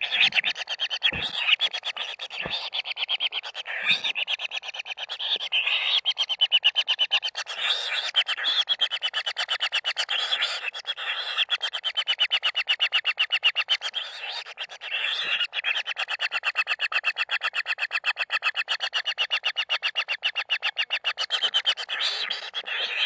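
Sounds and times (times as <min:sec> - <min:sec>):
bird chicks begging: 0:00.0 - 0:23.0.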